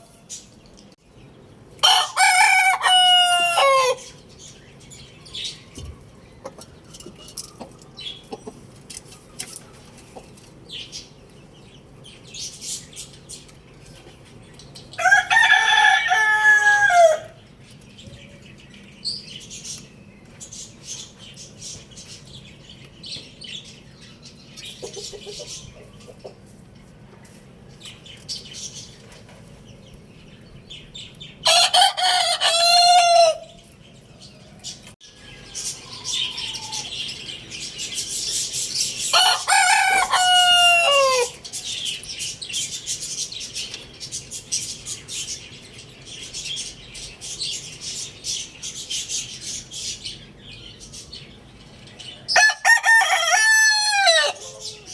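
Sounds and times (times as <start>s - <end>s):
birds chirping and clucking: 0.0s - 54.9s
rooster crowing: 1.8s - 4.1s, 15.0s - 17.4s, 31.4s - 33.5s, 35.1s - 37.0s, 39.1s - 41.4s, 52.3s - 54.9s.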